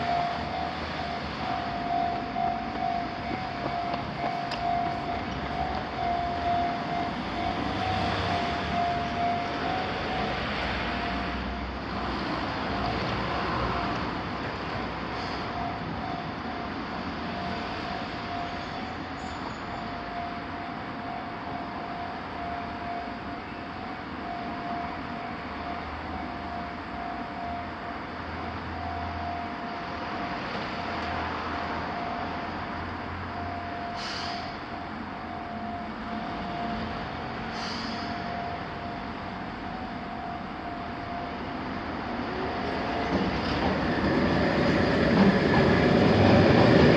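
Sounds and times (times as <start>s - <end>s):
train wheels rumbling over rails: 0.0s - 20.0s, 41.5s - 46.9s
level-crossing alarm bell ringing: 0.0s - 46.9s.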